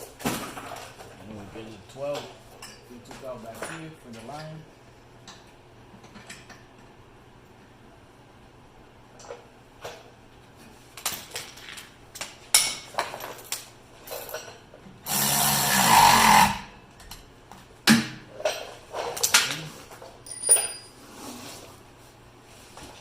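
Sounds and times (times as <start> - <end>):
metal tools clinking and knocking: 12.5 - 14.7, 18.4 - 21.0
power drill running: 15.1 - 16.7.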